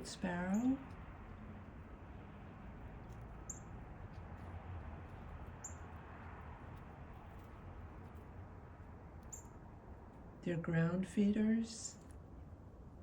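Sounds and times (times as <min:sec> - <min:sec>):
low background hiss: 0:08.3 - 0:13.0.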